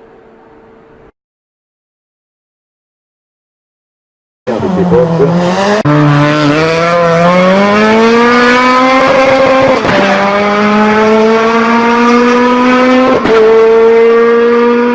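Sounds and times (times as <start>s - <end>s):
vehicle engine accelerating hard: 4.5s - 14.9s.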